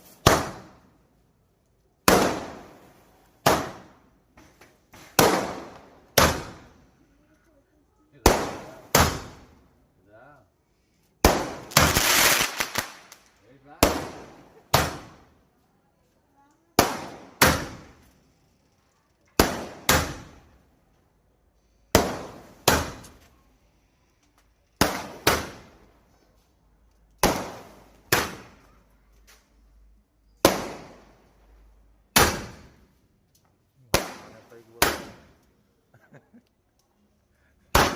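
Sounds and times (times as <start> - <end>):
fireworks bangs with echo: 0.0 - 0.8, 2.0 - 4.0, 5.1 - 6.8, 8.2 - 9.6, 11.2 - 15.4, 16.8 - 18.0, 19.4 - 20.6, 21.9 - 23.2, 24.8 - 25.8, 27.2 - 28.7, 30.4 - 31.4, 32.1 - 32.8, 33.9 - 35.4.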